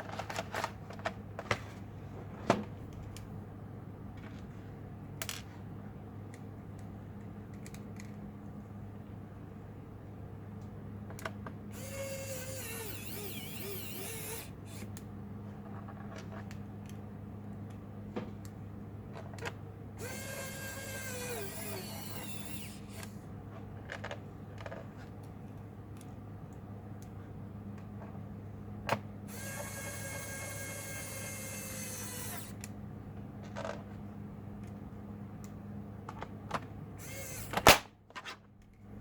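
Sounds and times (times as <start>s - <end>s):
sharp clicks of parts handled: 6.3s - 8.2s
electric screwdriver whine: 11.7s - 14.9s, 20.0s - 23.2s, 29.3s - 32.6s, 37.0s - 37.7s.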